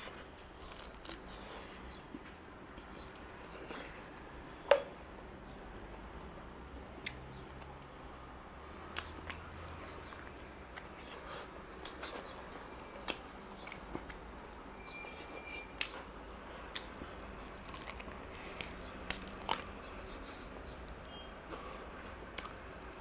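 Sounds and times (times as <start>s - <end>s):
chewing and wet mouth noises: 0.0s - 23.0s.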